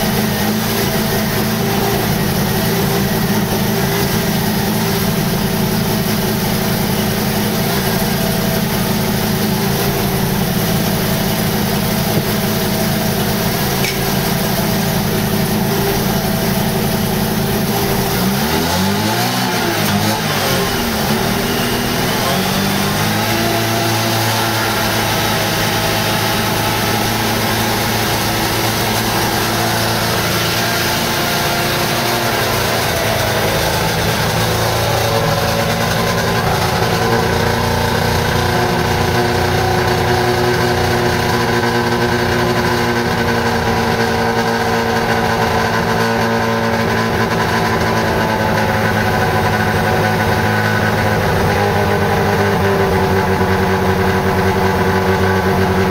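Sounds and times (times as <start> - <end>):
rotary engine idling: 0.0 - 55.9.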